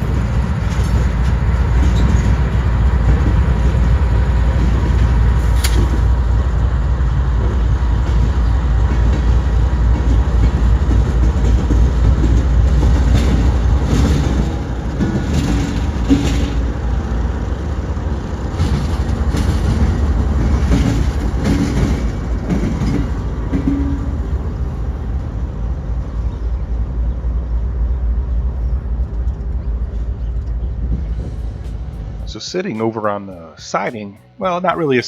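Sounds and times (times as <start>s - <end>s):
train wheel squeals: 0.0s - 17.2s
freight train cars rolling: 0.0s - 35.0s
train knocks: 0.0s - 35.0s.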